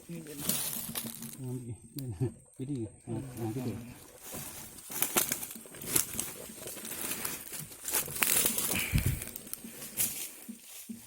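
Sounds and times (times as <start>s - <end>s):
leaves and twigs rustling and crackling: 0.0s - 2.1s, 3.1s - 11.0s.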